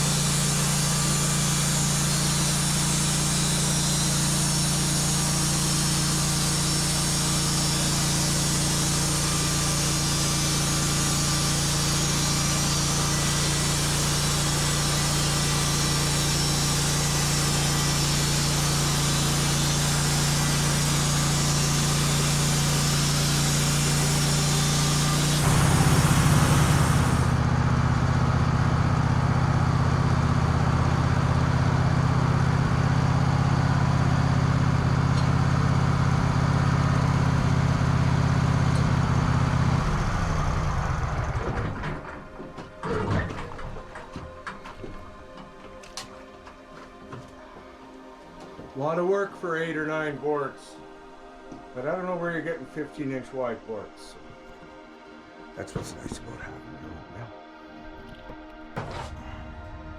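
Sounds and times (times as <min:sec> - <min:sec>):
band blade hissing through wood: 0:00.0 - 0:27.4
sawmill engine running: 0:00.0 - 0:51.2, 0:58.4 - 0:59.9.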